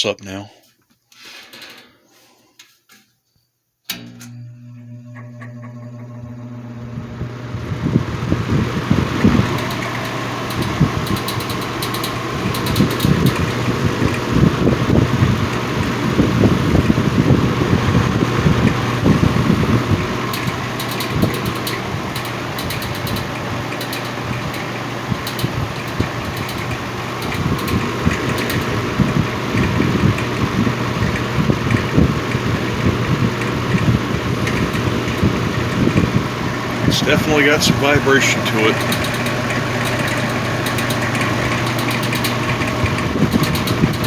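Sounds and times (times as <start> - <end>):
box fan humming with rattle: 3.9 - 44.0.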